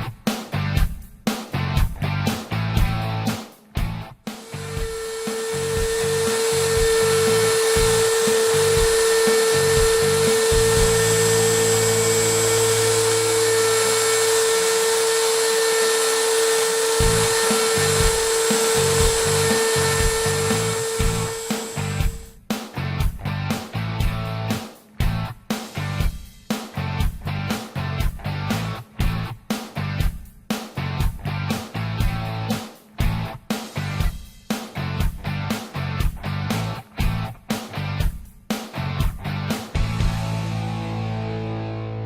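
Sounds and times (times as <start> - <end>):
rock music: 0.0 - 42.0
router spindle whining: 4.4 - 22.3.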